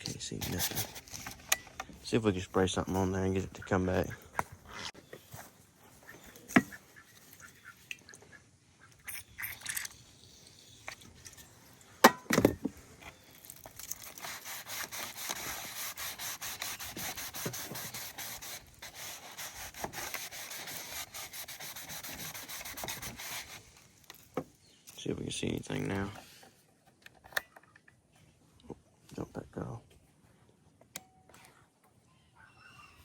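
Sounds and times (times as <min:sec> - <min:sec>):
rubbing on plastic lens: 0:00.0 - 0:01.5, 0:13.2 - 0:24.4.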